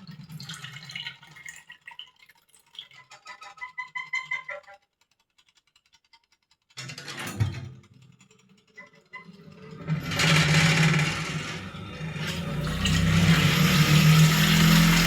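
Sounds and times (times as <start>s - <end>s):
washing machine motor hum: 8.1s - 15.0s
rushing water: 12.4s - 15.0s.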